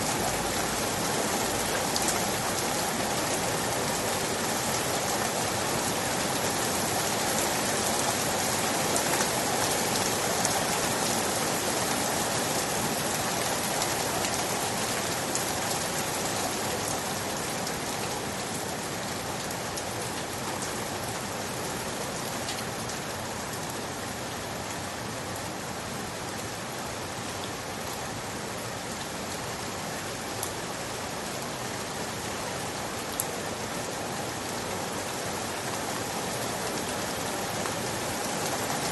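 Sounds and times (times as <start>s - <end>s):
steady rain falling: 0.0s - 38.9s.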